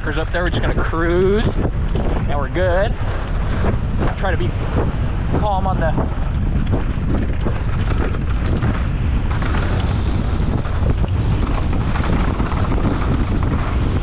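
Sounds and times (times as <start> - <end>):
wind buffeting microphone: 0.0 - 14.0
bike knocks and rattles: 3.2 - 14.0.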